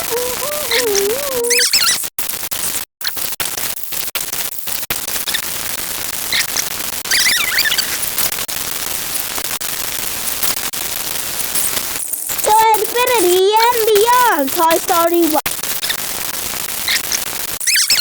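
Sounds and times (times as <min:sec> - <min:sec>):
high squeaky chirps: 0:00.0 - 0:02.0, 0:17.7 - 0:18.0
loud static hiss: 0:04.2 - 0:17.6.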